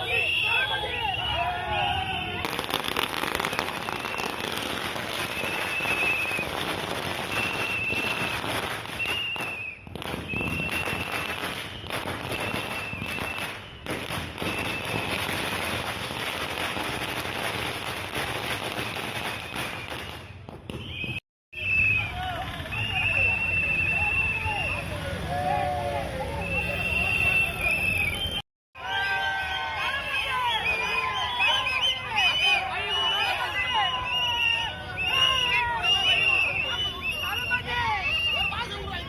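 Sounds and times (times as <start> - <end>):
high whistle blasts: 0.0 - 2.5, 3.4 - 4.6, 5.2 - 6.6, 7.2 - 15.2, 19.2 - 24.9, 26.3 - 39.0
firecrackers crackling: 2.4 - 21.2.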